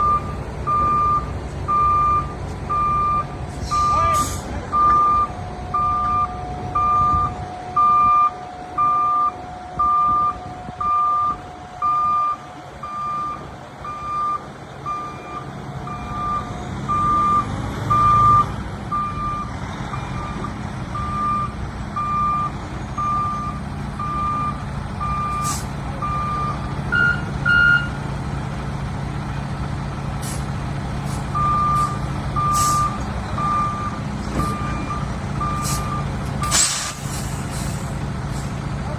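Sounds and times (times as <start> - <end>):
higher double beep: 0.0 - 9.3
truck backup alarm beeping: 0.0 - 28.0, 31.1 - 36.9
low engine rumble: 0.0 - 38.9.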